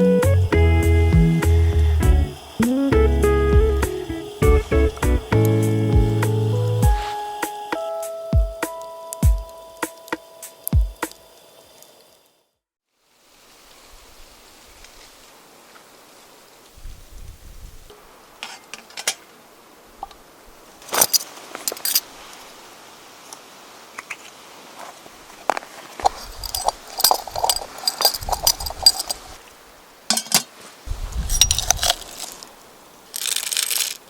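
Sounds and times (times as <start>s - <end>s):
rustle: 5.0s - 9.2s, 9.8s - 34.0s
small hard objects clinking: 20.8s - 22.0s, 26.0s - 29.4s, 30.1s - 30.5s, 31.2s - 32.5s, 33.1s - 34.0s.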